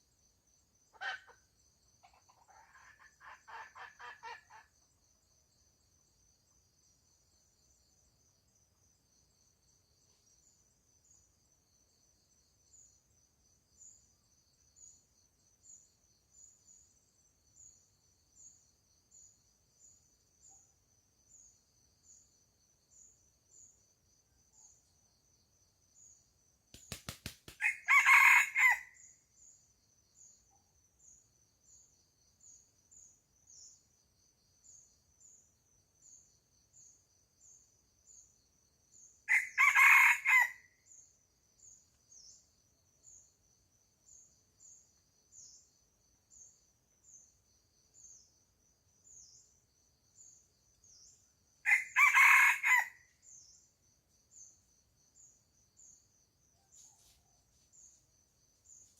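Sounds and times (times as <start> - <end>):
insects chirping: 0.0 - 58.9
quick run of clicks: 26.7 - 27.6
rooster crowing: 27.6 - 29.0, 39.3 - 40.6, 51.7 - 53.0.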